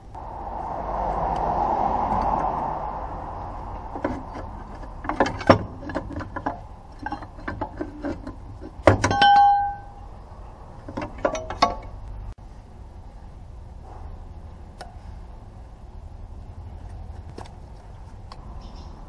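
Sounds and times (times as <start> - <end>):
metal objects clinking: 9.0 - 10.0
metallic ringing tone: 9.1 - 10.2.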